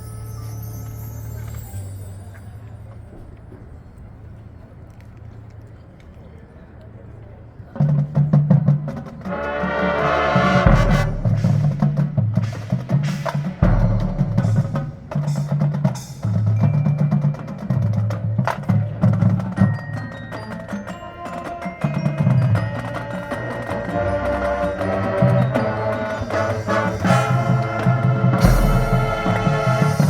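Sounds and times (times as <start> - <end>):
mallet keyboards and chimes: 0.0 - 3.3, 12.7 - 30.0
drum hits: 10.4 - 16.5, 26.8 - 30.0.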